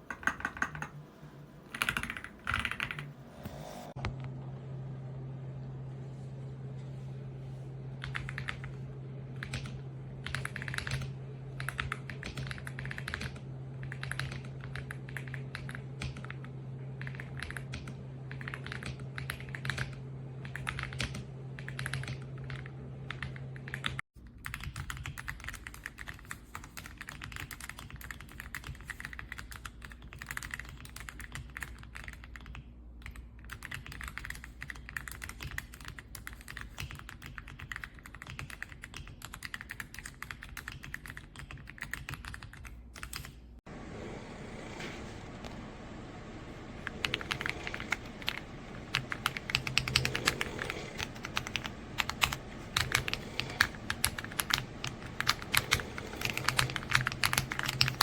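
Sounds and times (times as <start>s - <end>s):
mechanical keyboard typing: 0.0s - 1.0s, 1.7s - 3.1s, 8.0s - 8.7s, 9.4s - 16.4s, 17.0s - 43.4s, 46.8s - 58.0s
steady low hum: 0.0s - 24.0s, 31.1s - 58.0s.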